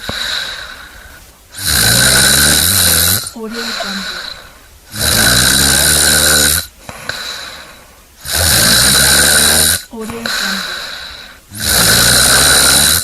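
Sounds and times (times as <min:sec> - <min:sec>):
quiet breath out: 0:00.0 - 0:01.4, 0:03.2 - 0:04.8, 0:06.8 - 0:08.1, 0:09.8 - 0:11.5
person snoring: 0:00.0 - 0:13.0.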